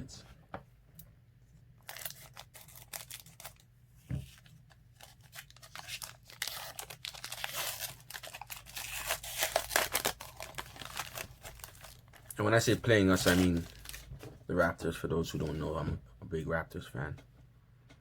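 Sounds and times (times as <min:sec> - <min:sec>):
wrapper crinkling and tearing: 0:01.8 - 0:03.6, 0:04.3 - 0:14.2.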